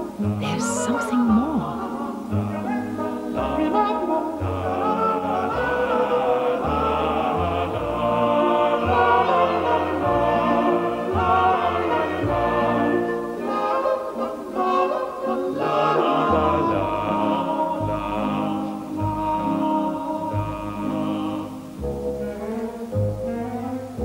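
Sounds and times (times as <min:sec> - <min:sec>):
choir singing: 0:00.0 - 0:24.0
operatic singing: 0:00.0 - 0:24.0
orchestral music: 0:00.0 - 0:24.0.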